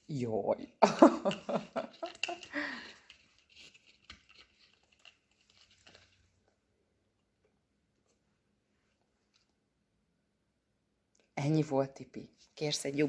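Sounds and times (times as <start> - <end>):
person's voice: 0.0 - 1.4, 11.4 - 13.0.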